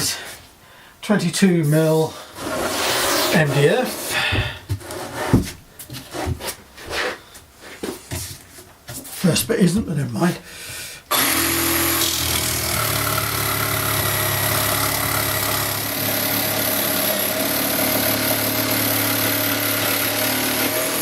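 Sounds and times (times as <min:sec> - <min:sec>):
jigsaw sawing through board: 0:11.1 - 0:21.0.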